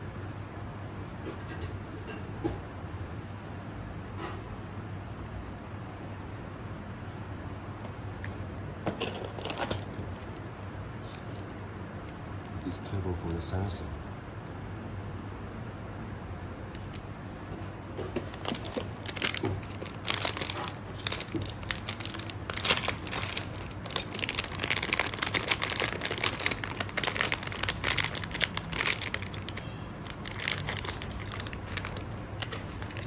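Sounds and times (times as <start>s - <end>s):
plastic packaging crinkling: 16.7s - 17.2s, 18.2s - 33.0s.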